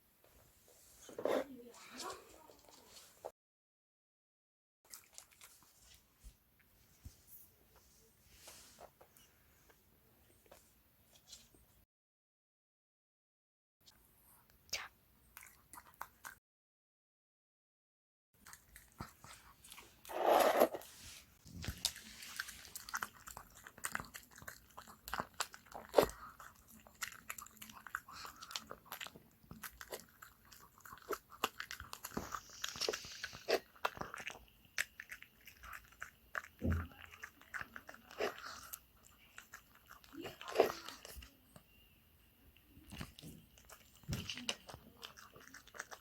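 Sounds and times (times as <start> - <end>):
dog chewing and eating: 4.9 - 6.1, 18.4 - 41.4, 42.6 - 46.0.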